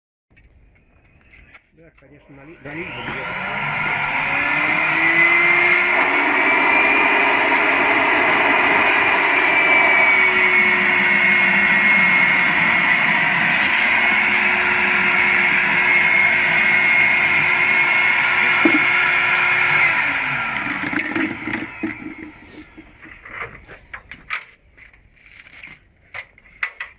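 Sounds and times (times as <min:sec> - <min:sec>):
vacuum cleaner high whine: 0:02.2 - 0:22.9.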